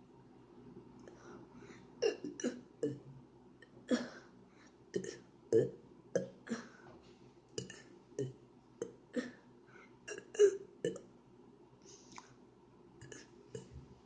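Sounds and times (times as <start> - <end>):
person burping: 2.0 - 3.1, 5.0 - 6.8, 7.6 - 9.4, 10.1 - 11.1, 13.0 - 13.8.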